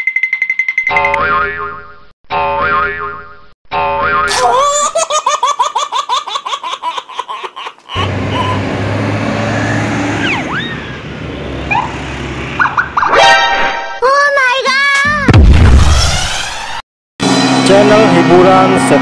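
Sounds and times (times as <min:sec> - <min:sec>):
vehicle engine humming: 0:07.9 - 0:13.0
road noise: 0:07.9 - 0:13.8.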